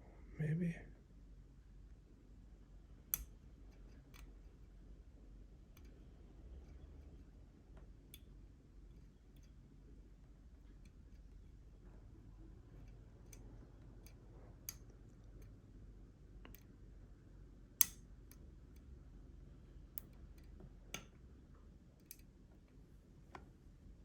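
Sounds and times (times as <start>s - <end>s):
lock pick clicking in lock: 17.8s - 18.0s.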